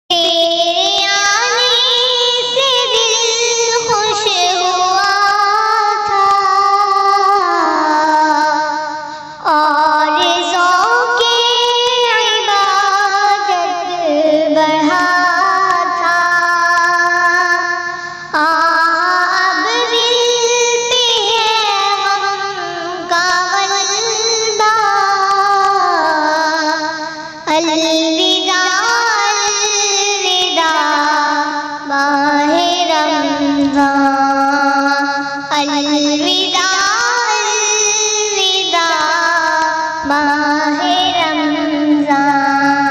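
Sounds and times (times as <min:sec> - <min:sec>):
child singing devotional song: 0:00.1 - 0:42.9.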